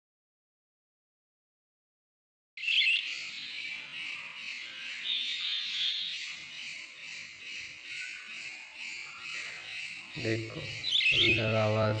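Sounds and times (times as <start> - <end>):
budgerigars chattering: 2.6 - 12.0.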